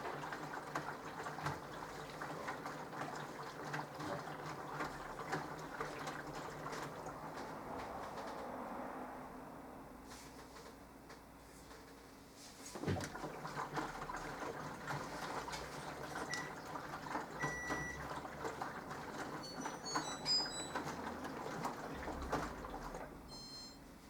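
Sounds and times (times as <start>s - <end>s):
water sloshing: 0.0s - 8.2s, 12.7s - 23.3s
washing machine drum turning: 0.0s - 8.4s, 12.8s - 23.6s.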